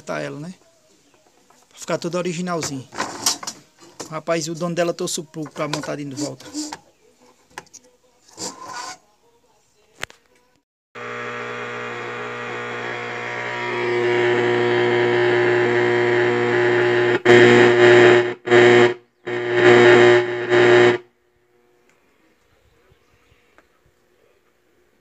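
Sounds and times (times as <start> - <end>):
electrical hum: 11.0 - 21.0
loud buzzing hiss: 11.0 - 21.0.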